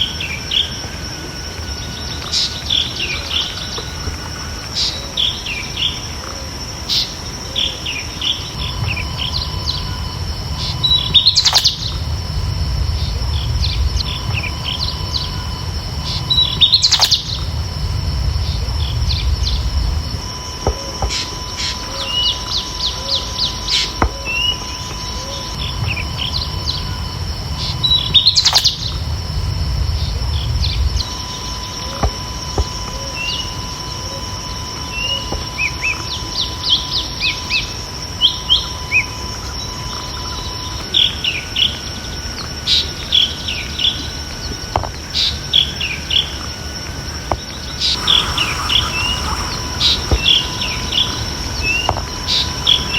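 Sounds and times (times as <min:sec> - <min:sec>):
steady high-pitched hum: 0:00.0 - 0:52.9
small birds chirping and trilling: 0:01.6 - 0:12.2, 0:13.0 - 0:17.6, 0:21.0 - 0:29.0, 0:47.5 - 0:52.9
loud bird call: 0:02.3 - 0:12.0, 0:13.6 - 0:17.4, 0:47.8 - 0:52.9
low rumble: 0:08.6 - 0:20.4, 0:25.6 - 0:31.1.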